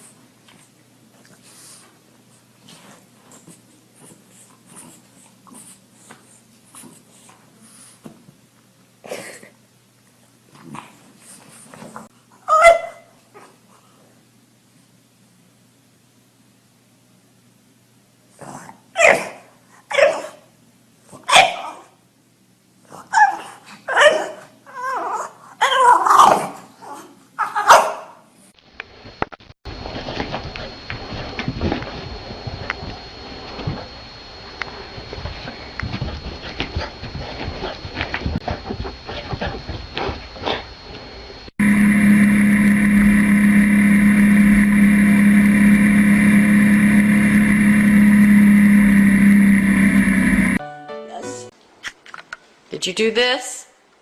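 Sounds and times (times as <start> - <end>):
dog barking and whining: 12.4 - 13.1, 19.0 - 20.4, 21.2 - 21.9, 23.1 - 28.2
low motor drone: 29.7 - 50.6.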